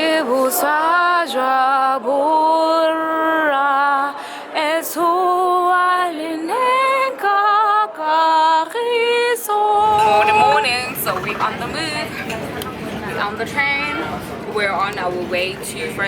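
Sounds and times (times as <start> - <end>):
woman singing with music: 0.0 - 12.3.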